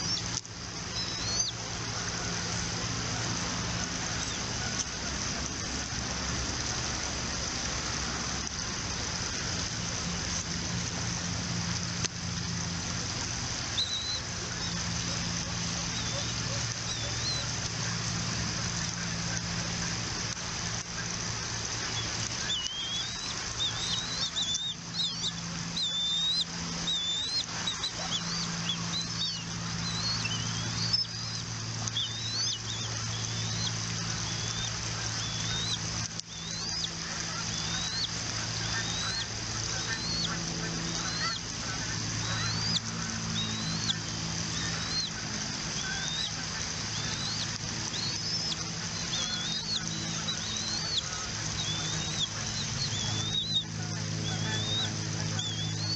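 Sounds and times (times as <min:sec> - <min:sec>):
low hum and hiss: 0:00.0 - 0:55.9
eagles chirping: 0:00.9 - 0:01.6, 0:13.8 - 0:17.5, 0:21.9 - 0:55.9.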